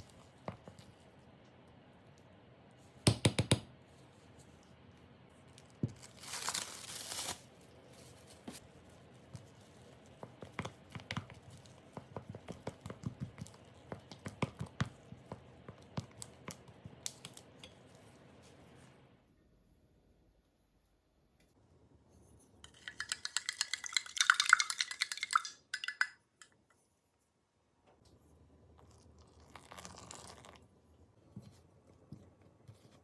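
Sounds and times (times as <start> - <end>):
packaging ripping: 6.0 - 7.5.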